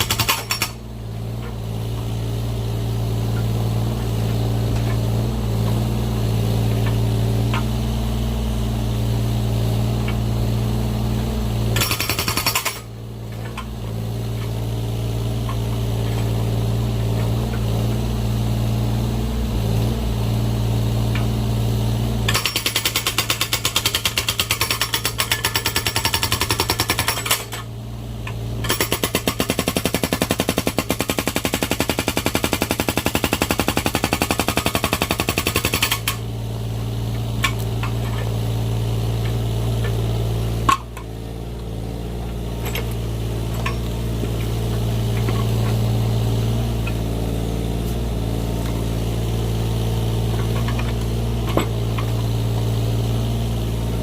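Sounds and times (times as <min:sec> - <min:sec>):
hydraulic breaker hammering: 0:00.0 - 0:00.8, 0:11.7 - 0:13.8, 0:22.3 - 0:27.7, 0:28.6 - 0:36.3
excavator engine running: 0:00.0 - 0:54.0.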